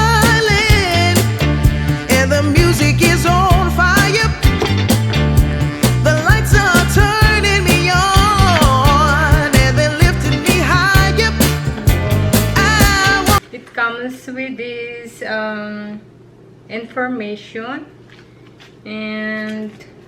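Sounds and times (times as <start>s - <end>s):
pop song with singing: 0.0s - 13.4s.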